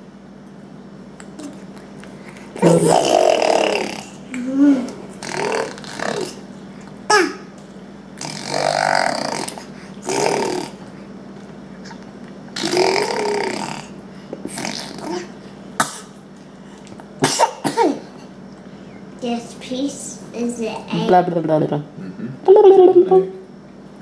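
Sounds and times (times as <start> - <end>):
child making gurgling throat noises: 2.6 - 6.4, 8.2 - 10.8, 12.6 - 13.9.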